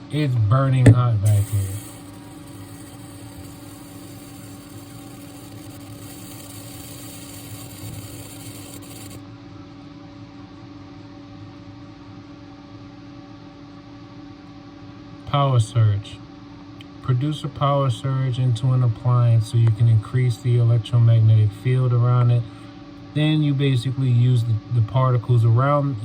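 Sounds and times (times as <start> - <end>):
refrigerator electrical hum: 0.0 - 26.0
high hiss: 0.9 - 9.2.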